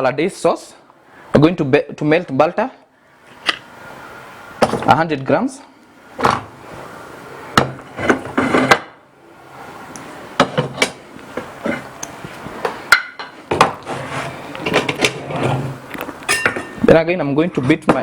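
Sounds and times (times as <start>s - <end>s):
utensils knocking against pans: 16.3s - 16.9s.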